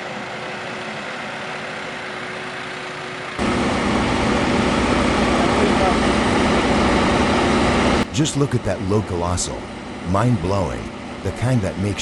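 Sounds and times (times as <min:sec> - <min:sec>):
heavy truck engine running: 0:00.0 - 0:12.0.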